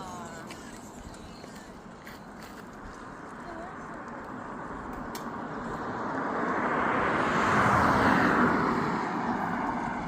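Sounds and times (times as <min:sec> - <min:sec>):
vehicle passing by: 0:04.4 - 0:10.0.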